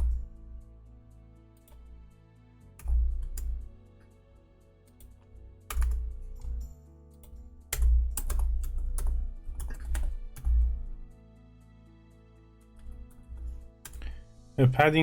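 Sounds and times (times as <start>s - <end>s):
soft background music: 0.0s - 15.0s
typing on computer keyboard: 5.7s - 10.8s, 12.8s - 14.1s.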